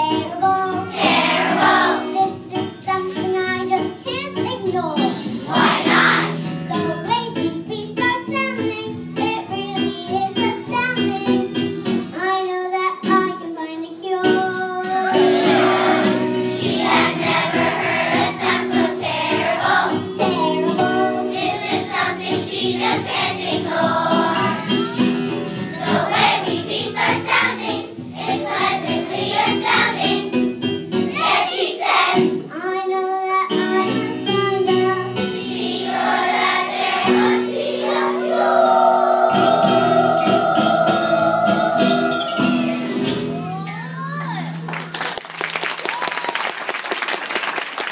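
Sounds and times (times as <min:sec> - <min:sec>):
child singing: 0:00.0 - 0:15.4, 0:31.2 - 0:35.2
instrumental accompaniment: 0:14.3 - 0:32.6, 0:33.5 - 0:44.1.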